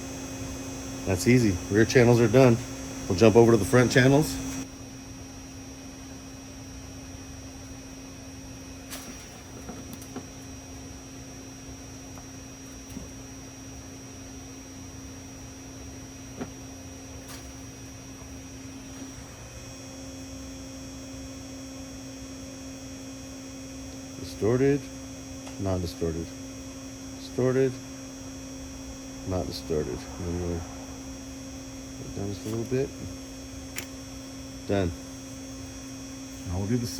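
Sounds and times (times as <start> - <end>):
electronic hum from speakers: 0.0 - 36.9.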